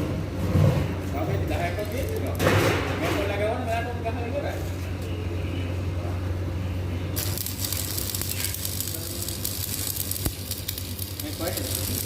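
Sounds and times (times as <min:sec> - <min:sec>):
welding arc crackling: 0:01.4 - 0:02.4, 0:07.2 - 0:12.0.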